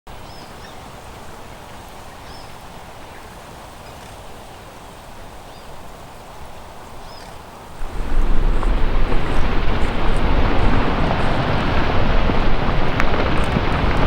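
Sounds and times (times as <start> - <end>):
steady hiss: 0.1 - 14.0
small bird calling: 0.2 - 4.4, 6.9 - 7.9.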